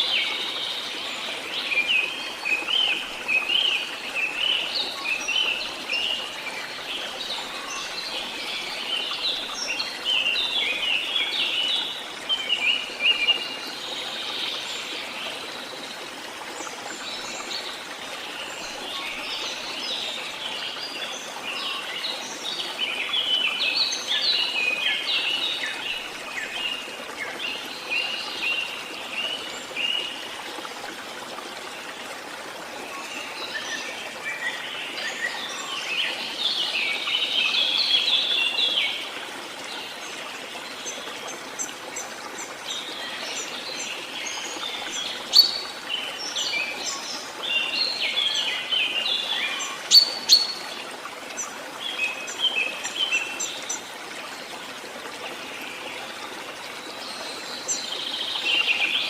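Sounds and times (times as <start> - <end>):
songbirds chirping and trilling: 40.3 - 50.8.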